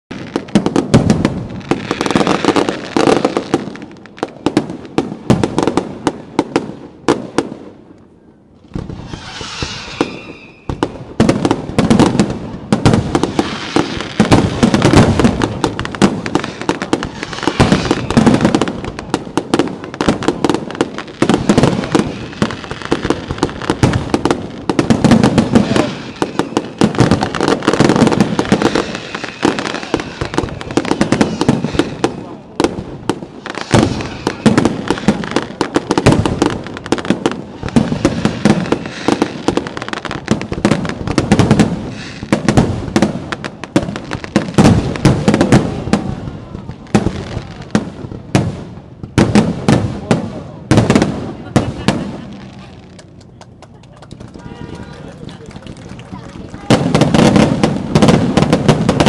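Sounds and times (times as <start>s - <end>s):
fireworks bangs and crackles: 0.1s - 59.0s
fireworks hissing: 8.6s - 49.5s.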